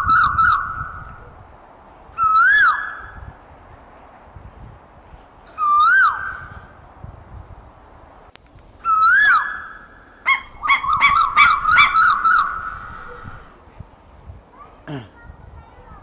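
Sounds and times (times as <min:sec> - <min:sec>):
bird whistled calls: 0:02.2 - 0:03.3, 0:05.5 - 0:06.7, 0:08.8 - 0:13.5.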